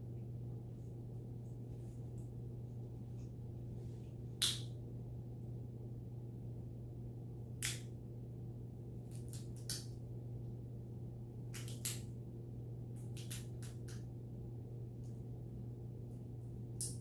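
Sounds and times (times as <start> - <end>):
steady low hum: 0.0 - 17.0
peanut shells cracking: 9.0 - 10.0, 11.5 - 12.1, 13.0 - 14.1.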